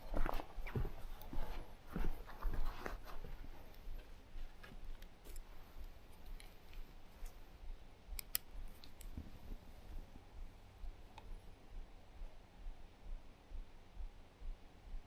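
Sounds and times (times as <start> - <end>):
low rumble: 5.7 - 15.0
faint sharp clicks: 8.1 - 9.2.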